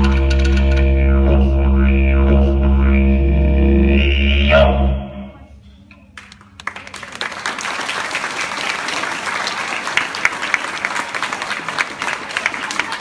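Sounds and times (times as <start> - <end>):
audience applause: 6.2 - 13.0.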